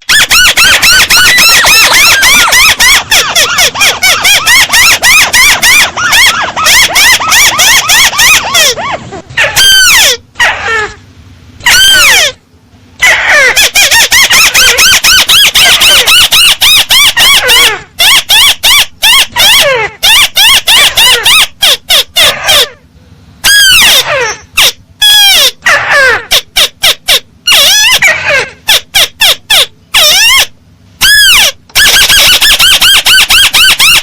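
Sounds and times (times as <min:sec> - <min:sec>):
bird squeaky calls: 0:00.0 - 0:10.9, 0:13.0 - 0:22.8.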